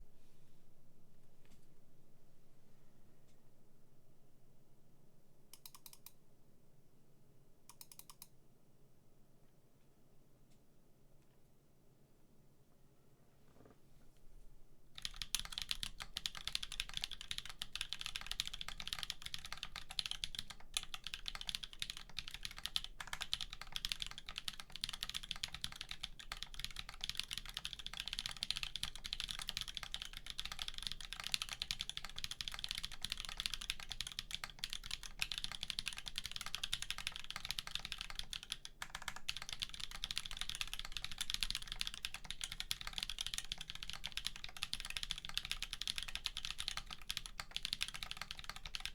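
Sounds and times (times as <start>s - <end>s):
fast typing on mechanical keyboard: 15.0s - 48.9s.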